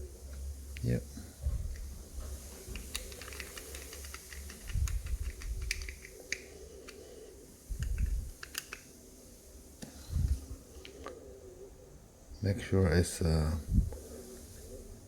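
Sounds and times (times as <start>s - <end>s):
light clicks and ticks of handling: 2.6s - 7.1s, 7.8s - 8.9s.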